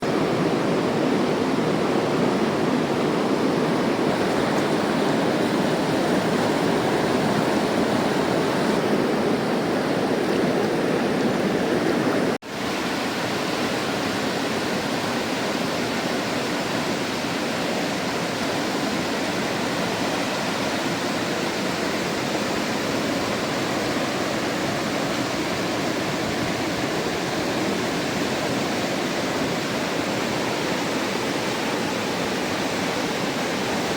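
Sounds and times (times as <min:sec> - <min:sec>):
river water rushing: 0:00.0 - 0:33.9.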